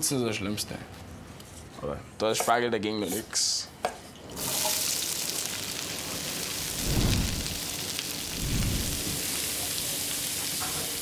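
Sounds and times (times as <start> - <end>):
food sizzling in a pan: 4.3 - 11.0
low rumbles: 6.6 - 9.2.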